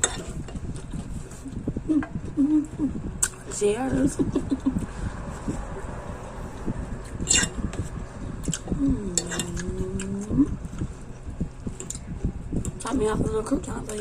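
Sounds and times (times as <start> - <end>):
person humming: 1.9 - 3.1, 8.7 - 10.6.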